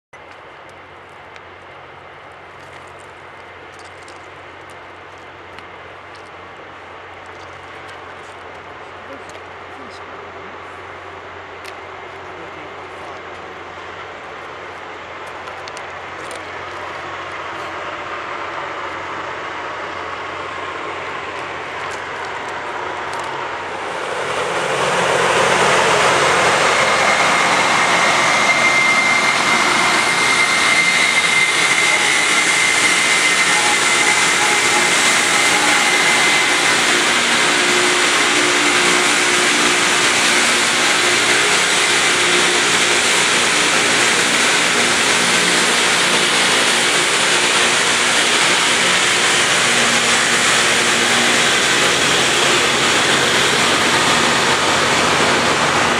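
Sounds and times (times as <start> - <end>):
low diesel hum: 0.2 - 55.9
grinding stones hissing on rail: 0.4 - 55.9
thin high squeal: 27.4 - 39.1.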